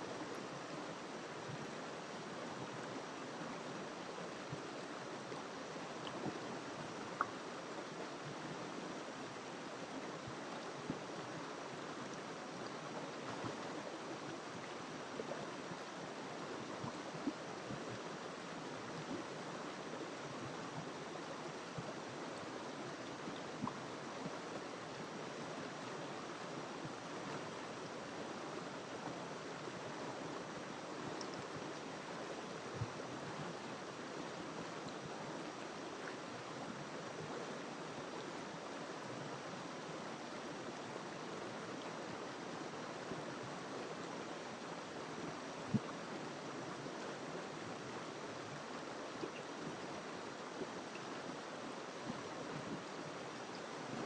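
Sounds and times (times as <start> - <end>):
river rushing water: 0.0 - 54.0
faint clicks: 7.2 - 7.4.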